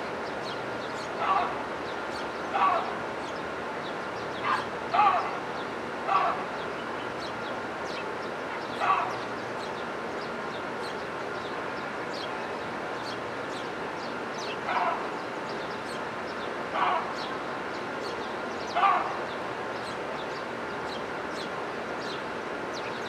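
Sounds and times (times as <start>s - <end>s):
small birds chirping: 0.2s - 11.5s
louder lower bird calls: 1.0s - 1.6s, 2.5s - 3.4s, 4.3s - 9.7s, 18.6s - 21.5s.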